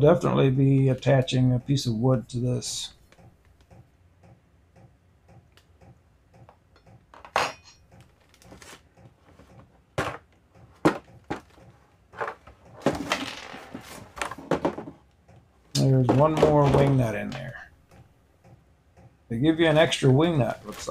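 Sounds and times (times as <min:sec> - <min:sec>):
rustling: 0:19.7 - 0:20.9.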